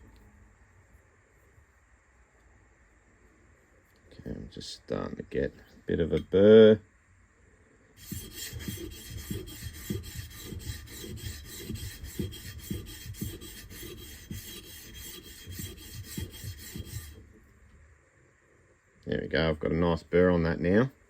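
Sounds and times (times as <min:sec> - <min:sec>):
chisel grinding on sharpening plate: 0:08.0 - 0:17.2.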